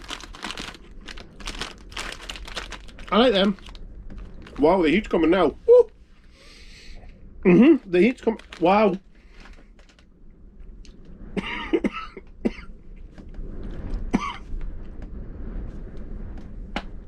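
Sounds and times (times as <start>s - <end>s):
man coughing: 11.4s - 12.7s.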